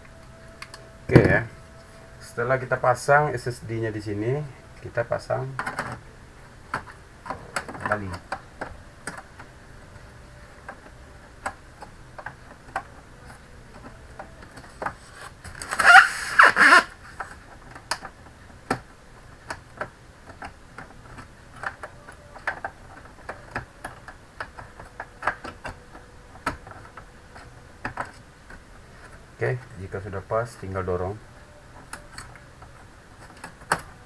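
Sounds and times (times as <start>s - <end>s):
scraping squeak: 15.0s - 16.9s.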